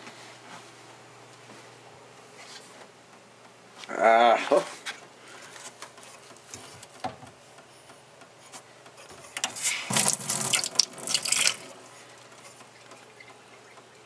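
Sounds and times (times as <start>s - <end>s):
water splashing and running: 9.8s - 14.0s.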